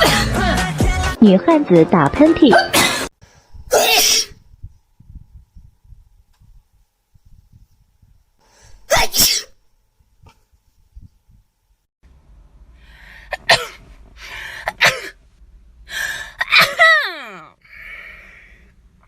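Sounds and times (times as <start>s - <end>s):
in-breath: 3.2s - 3.7s, 8.4s - 8.9s, 12.7s - 13.4s, 14.2s - 14.8s, 15.8s - 16.4s, 17.6s - 18.8s
woman sneezing: 3.7s - 4.4s, 8.9s - 9.6s, 16.4s - 17.5s.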